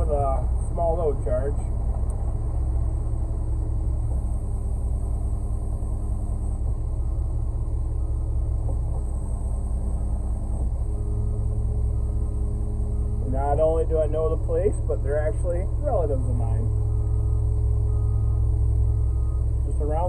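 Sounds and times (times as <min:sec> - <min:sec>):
diesel truck engine rumbling: 0:00.0 - 0:20.0.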